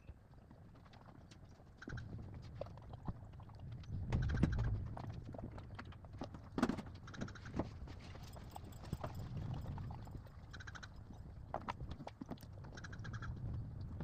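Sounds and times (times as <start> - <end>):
horse hooves stepping: 5.0 - 12.9.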